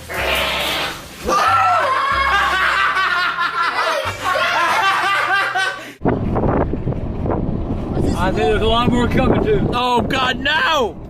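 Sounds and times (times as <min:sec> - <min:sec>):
people laughing: 0:01.7 - 0:06.0.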